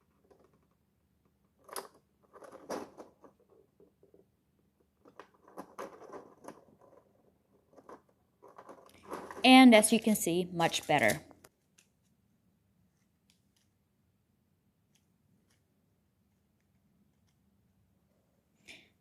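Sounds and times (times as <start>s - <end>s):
plastic scales clicking and scraping: 5.0s - 9.5s.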